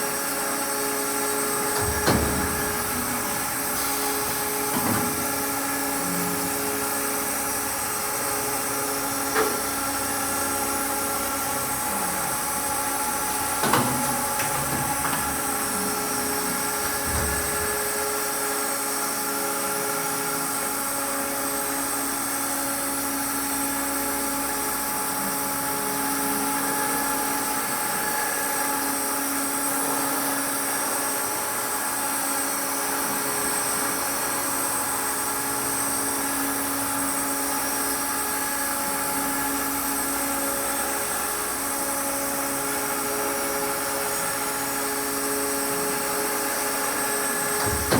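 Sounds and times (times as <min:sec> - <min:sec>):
machine whine and hum: 0:00.0 - 0:47.9.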